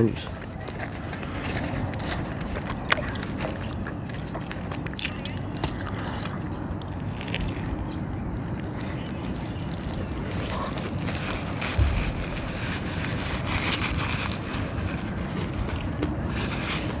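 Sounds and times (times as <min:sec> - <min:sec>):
chewing a sandwich: 0:00.0 - 0:12.3
wind on microphone: 0:11.0 - 0:16.8.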